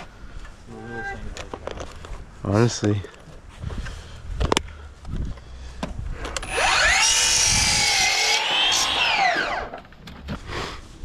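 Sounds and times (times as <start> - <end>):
power saw cutting wood: 6.4 - 9.8.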